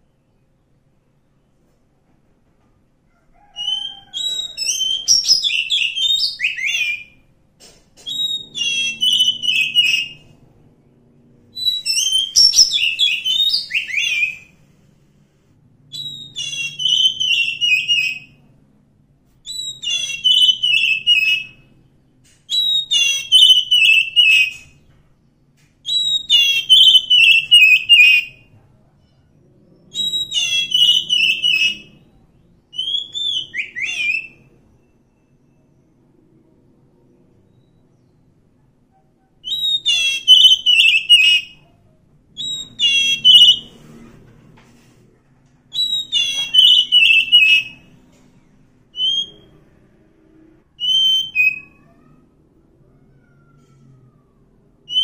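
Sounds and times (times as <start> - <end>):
bird singing whistled phrases: 3.6 - 7.2, 8.1 - 10.3, 11.6 - 14.5, 15.9 - 18.4, 19.4 - 21.6, 22.5 - 24.7, 25.9 - 28.4, 29.9 - 32.0, 32.7 - 34.9, 39.4 - 41.6, 42.4 - 43.7, 45.7 - 47.8, 49.0 - 49.5, 50.8 - 51.9.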